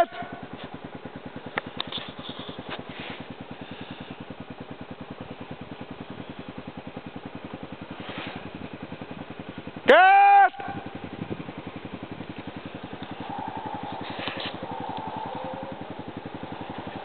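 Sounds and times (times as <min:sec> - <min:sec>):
atv engine idling: 0:00.0 - 0:17.0.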